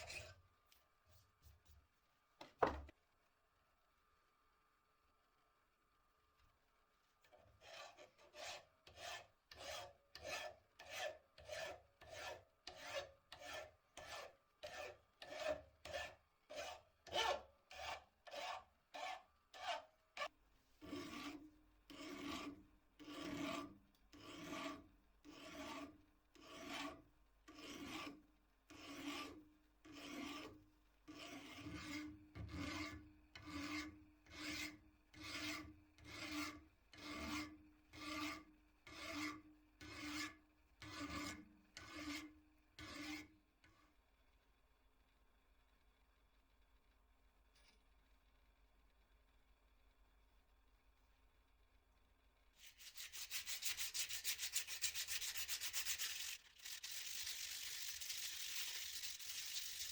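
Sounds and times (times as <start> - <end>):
hand file rasping on steel: 7.6 - 19.9, 20.8 - 43.3, 52.6 - 59.9.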